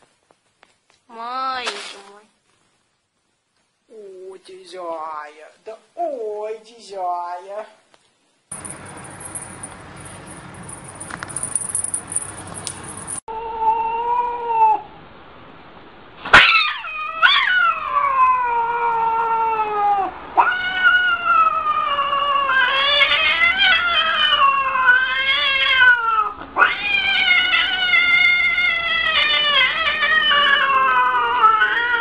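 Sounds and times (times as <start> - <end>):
cat caterwauling: 13.3 - 14.9, 16.4 - 32.0
cat meow: 16.4 - 32.0.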